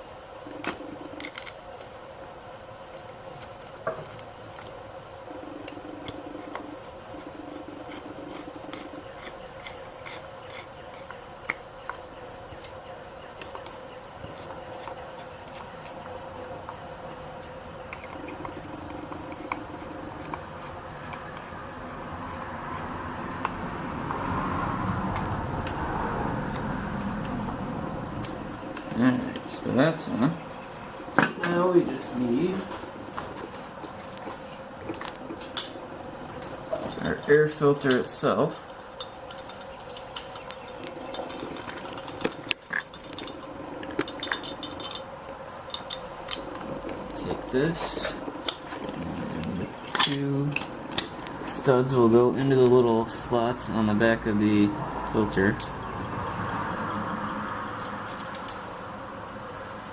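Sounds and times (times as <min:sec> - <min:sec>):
hand tools clicking and scraping: 0:02.8 - 0:04.8, 0:05.6 - 0:12.8, 0:13.4 - 0:16.8, 0:17.4 - 0:24.5, 0:32.4 - 0:52.8, 0:57.8 - 0:58.7
metal parts clicking and tapping: 0:38.9 - 0:46.4.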